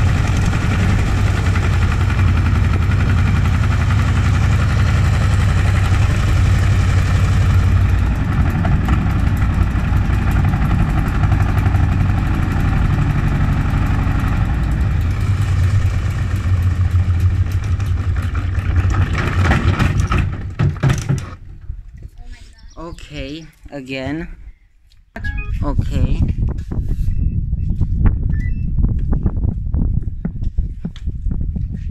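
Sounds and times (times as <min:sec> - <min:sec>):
washing machine spinning: 0:00.0 - 0:20.1
drum rattling and knocking: 0:00.0 - 0:21.6.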